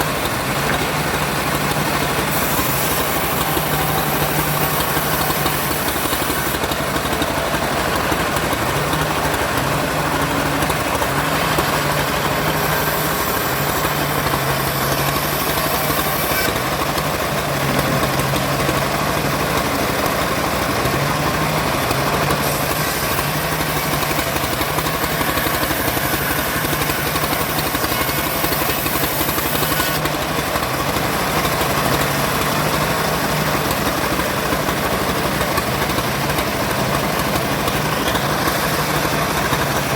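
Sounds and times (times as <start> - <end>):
engine running: 0.0 - 39.9
machinery rattling and hissing: 0.0 - 39.9.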